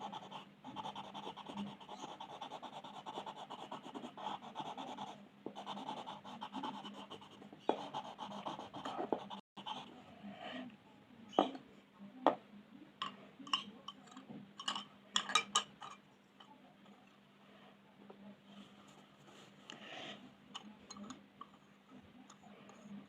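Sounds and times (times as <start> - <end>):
pencil shading on paper: 0.0 - 9.9.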